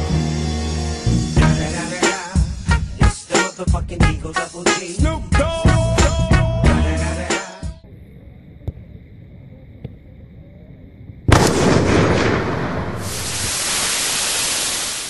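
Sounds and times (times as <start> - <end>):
loud explosion: 11.3 - 15.0.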